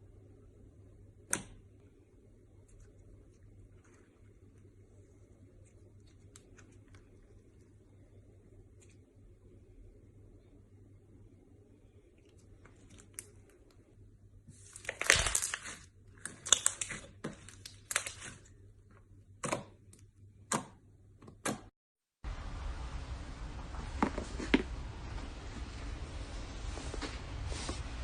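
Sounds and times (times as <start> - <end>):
slime squelching and crackling: 14.5 - 18.6.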